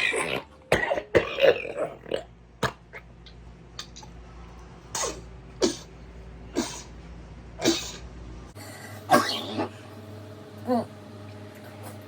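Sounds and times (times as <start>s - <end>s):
person coughing: 9.0s - 9.8s.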